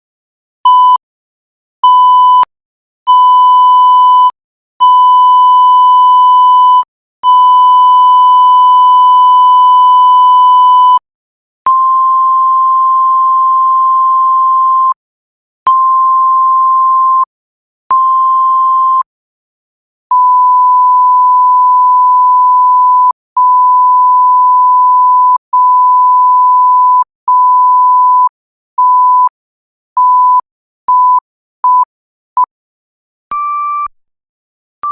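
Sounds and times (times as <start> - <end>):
censor bleeps: 20.1 - 29.3, 33.3 - 34.0.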